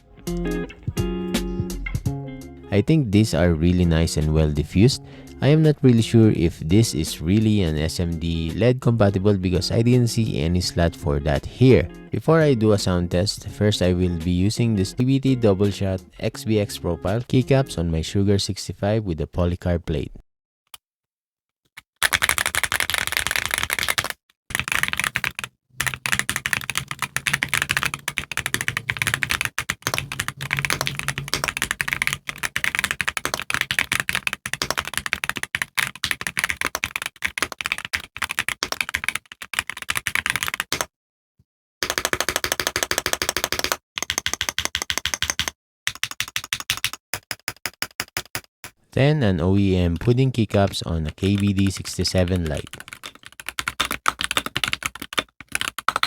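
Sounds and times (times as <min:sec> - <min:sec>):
mechanical keyboard typing clacks: 0:22.0 - 0:40.9, 0:41.8 - 0:48.5, 0:51.1 - 0:56.0.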